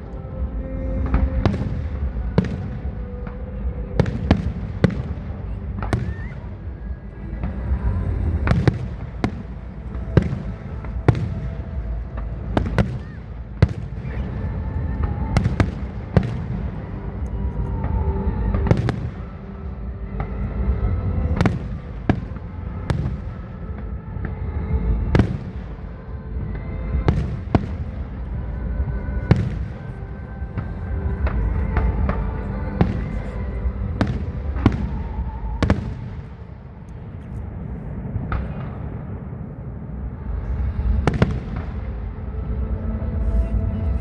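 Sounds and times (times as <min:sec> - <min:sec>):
low rumble: 0:00.0 - 0:44.0
fireworks bursting: 0:01.0 - 0:17.5, 0:18.6 - 0:19.4, 0:29.2 - 0:39.8.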